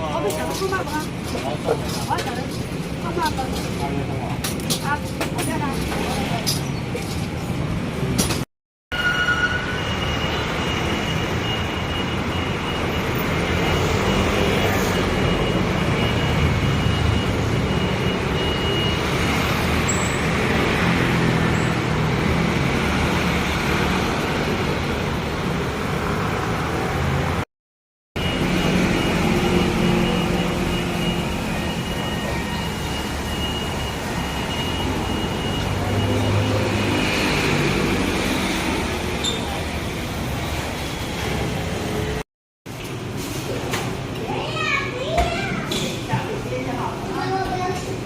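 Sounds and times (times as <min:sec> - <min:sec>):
passing motor vehicles rumble: 0:12.2 - 0:27.4, 0:28.2 - 0:42.2.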